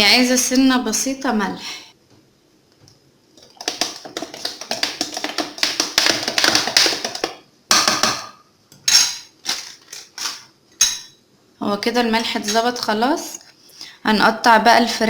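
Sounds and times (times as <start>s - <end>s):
spoon stirring thick marinade: 3.4s - 7.4s
taps and knocks: 3.5s - 8.3s.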